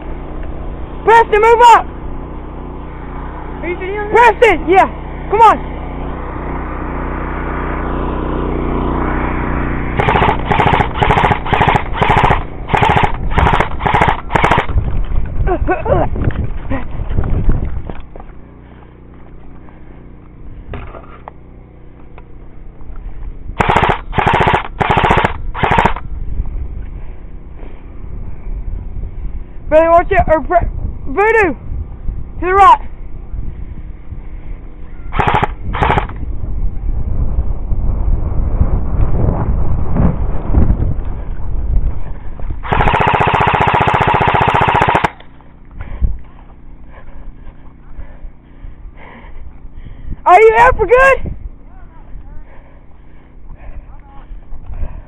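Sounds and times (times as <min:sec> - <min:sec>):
wind rumble on microphone: 0:08.8 - 0:18.8, 0:22.2 - 0:45.0, 0:45.6 - 0:55.0
airsoft gun full-auto bursts: 0:10.0 - 0:14.8, 0:23.6 - 0:26.0, 0:35.1 - 0:36.2, 0:42.6 - 0:45.3.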